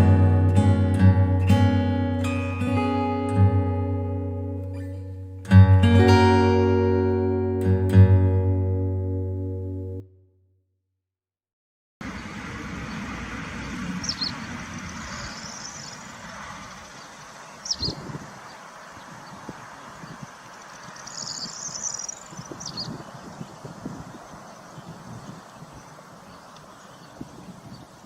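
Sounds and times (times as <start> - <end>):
outdoor background noise: 0.0 - 10.0, 12.0 - 28.0
wind buffeting microphone: 12.0 - 28.0.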